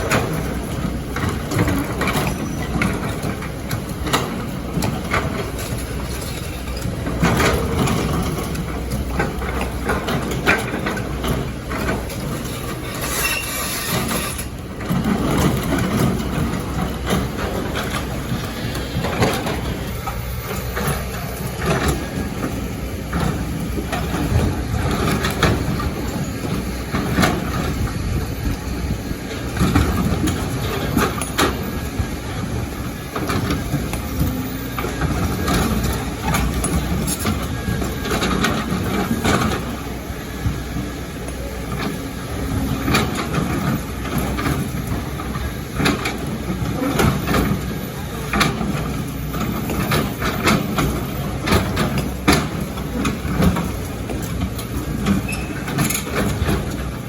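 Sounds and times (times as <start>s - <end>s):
excavator diesel engine running: 0.0s - 57.0s
metal clanks and knocks: 41.3s - 57.0s.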